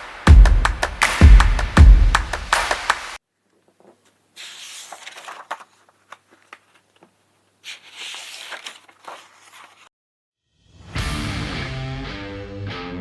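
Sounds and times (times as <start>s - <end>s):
crinkling handling noise: 3.4s - 9.9s.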